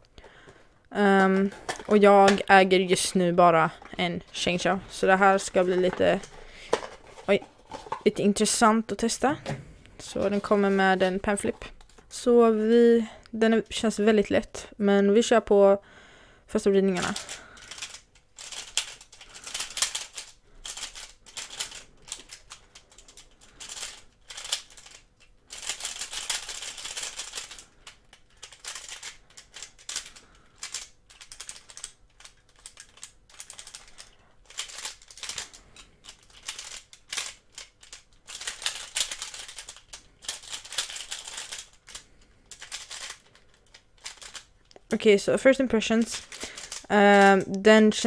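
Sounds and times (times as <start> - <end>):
plastic puzzle cube clicking: 17.0 - 44.8.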